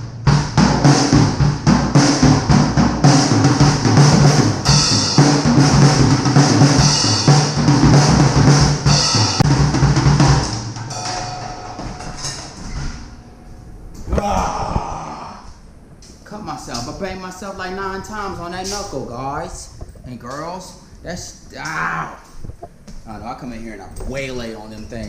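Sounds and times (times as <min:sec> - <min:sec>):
drum kit played hard: 0:00.0 - 0:12.8.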